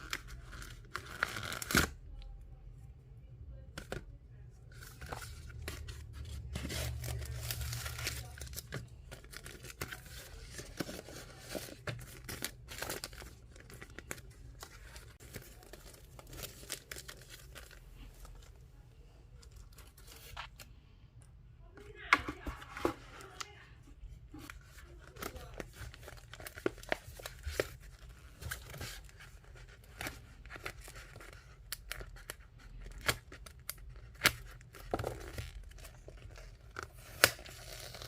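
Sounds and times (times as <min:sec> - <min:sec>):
plastic packaging tearing and crinkling: 0:00.0 - 0:02.0, 0:04.8 - 0:17.8, 0:24.7 - 0:38.0.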